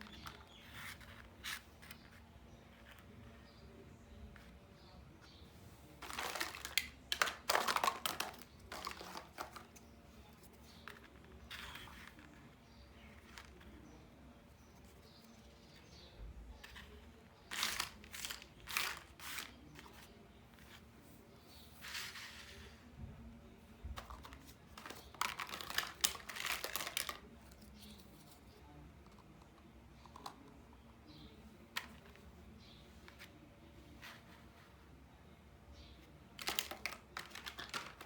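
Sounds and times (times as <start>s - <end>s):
plastic packaging crinkling: 6.0s - 9.7s, 17.5s - 19.5s, 24.2s - 27.3s, 36.4s - 38.0s.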